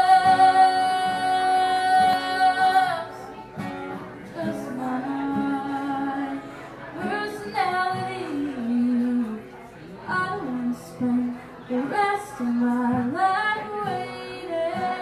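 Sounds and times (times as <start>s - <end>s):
acoustic guitar picking: 0.0s - 15.0s
woman singing a country ballad: 0.0s - 15.0s.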